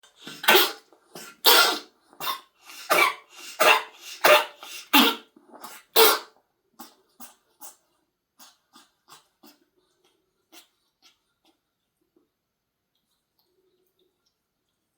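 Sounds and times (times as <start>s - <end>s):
snuffles: 0.1s - 7.8s
pet coughing harshly: 0.2s - 6.3s.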